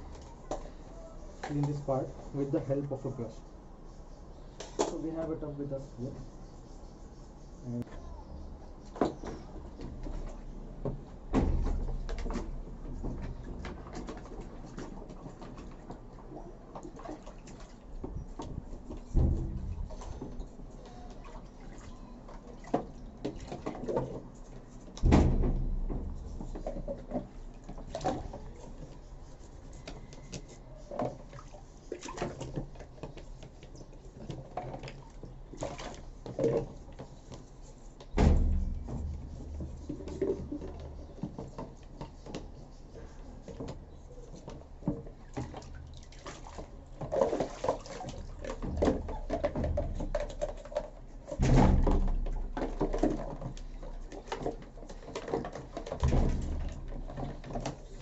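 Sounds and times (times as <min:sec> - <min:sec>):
water sloshing: 0:09.1 - 0:58.0
parts knocking and clattering: 0:18.0 - 0:20.8, 0:22.7 - 0:29.1, 0:36.2 - 0:42.5, 0:47.0 - 0:58.0
heavy thumps: 0:18.5 - 0:20.4, 0:25.0 - 0:27.4, 0:38.2 - 0:40.4, 0:51.4 - 0:52.6.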